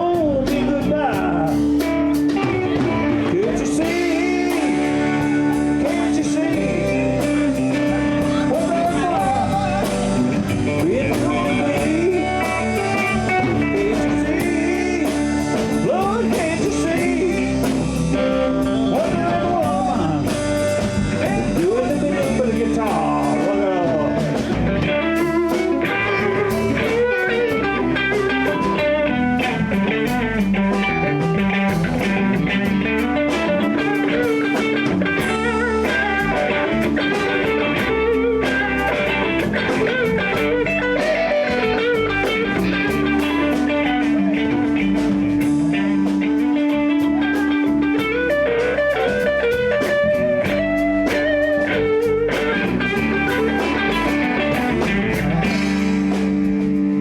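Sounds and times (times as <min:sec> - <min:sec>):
bass guitar: 0:00.0 - 0:57.0
drums: 0:00.0 - 0:57.0
electric guitar playing blues: 0:00.0 - 0:57.0.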